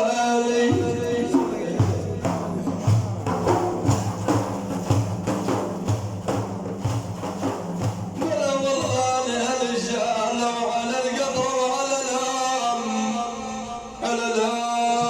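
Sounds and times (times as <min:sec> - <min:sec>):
person singing: 0:00.0 - 0:03.0
rhythmic percussion beat: 0:00.7 - 0:09.6.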